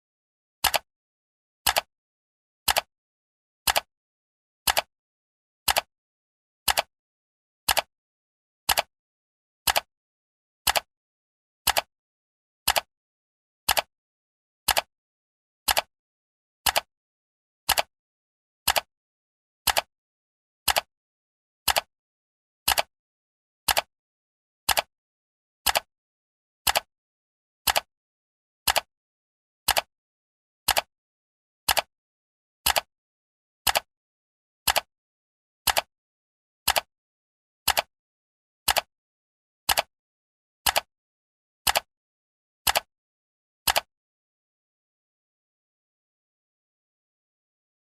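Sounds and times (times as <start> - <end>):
timer ticking: 14.7 - 14.9, 21.7 - 21.9, 31.7 - 31.9, 32.7 - 32.9, 34.7 - 34.9, 35.7 - 35.9, 36.7 - 36.9, 38.7 - 38.9.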